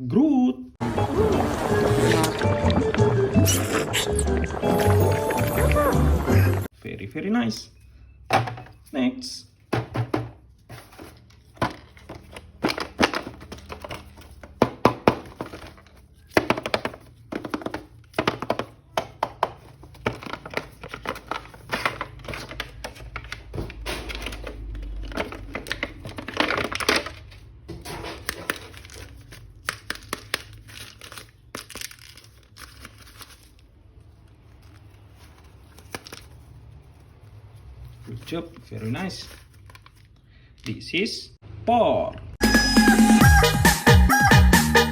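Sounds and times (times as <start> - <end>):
plastic packaging crinkling and tearing: 19.8 - 27.6, 28.2 - 40.3.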